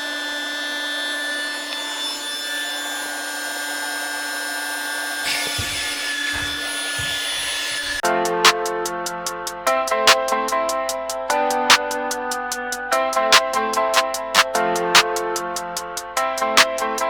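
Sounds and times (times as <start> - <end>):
music: 8.0 - 17.0.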